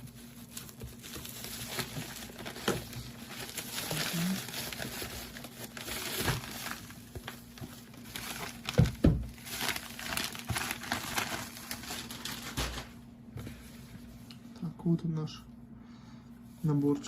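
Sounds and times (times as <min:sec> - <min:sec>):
packaging crinkling: 0:00.0 - 0:13.0.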